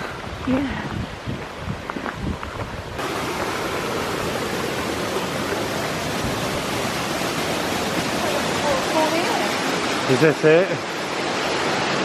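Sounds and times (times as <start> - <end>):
waterfall rushing: 2.9 - 12.0.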